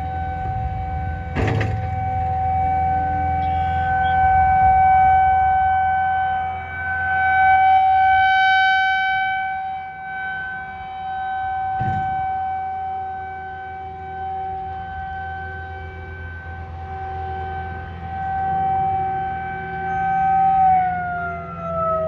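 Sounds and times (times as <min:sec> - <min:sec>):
warning siren tone: 0:00.0 - 0:22.0
low thump: 0:00.3 - 0:03.0, 0:11.8 - 0:12.5.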